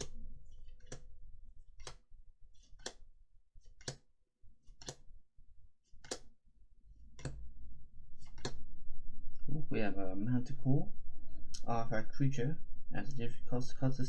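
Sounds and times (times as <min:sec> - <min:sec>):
cards flipping with crisp clicks: 0:08.2 - 0:08.6.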